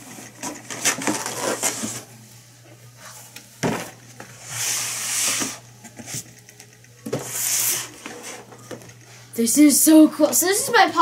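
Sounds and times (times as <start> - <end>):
faint steady hum: 0.0 - 11.0
cardboard rustling scrape: 0.4 - 2.1.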